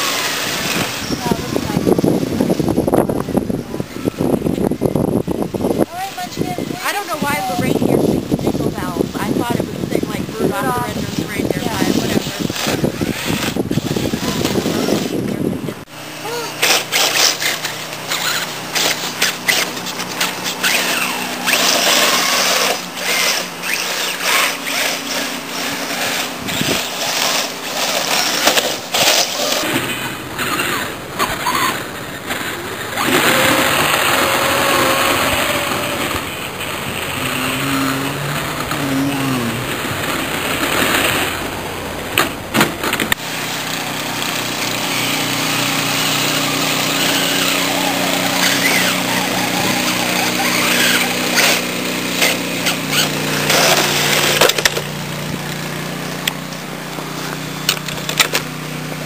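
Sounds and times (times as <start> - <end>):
electric motor whine: 7.2 - 42.1, 42.9 - 59.0.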